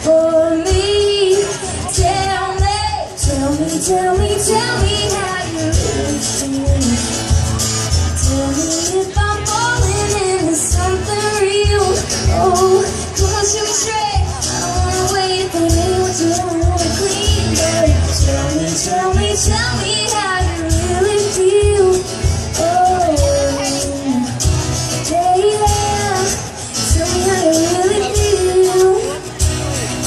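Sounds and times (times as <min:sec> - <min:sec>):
live band music: 0:00.0 - 0:30.0.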